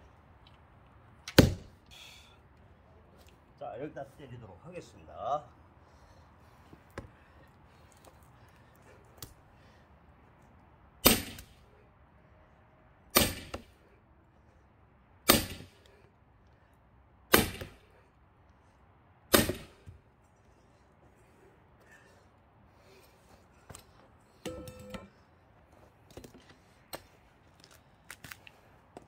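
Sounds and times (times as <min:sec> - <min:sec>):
axe blows splitting a log: 0:01.3 - 0:01.7, 0:11.0 - 0:11.5, 0:13.2 - 0:13.7, 0:15.3 - 0:15.7, 0:17.3 - 0:17.8, 0:19.3 - 0:19.8.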